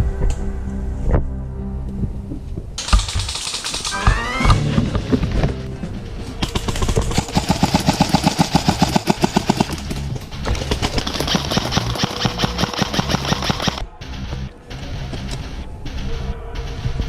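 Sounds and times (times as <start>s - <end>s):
background music: 0.0s - 17.0s
full-auto airsoft gunfire: 2.8s - 4.5s, 6.3s - 13.9s.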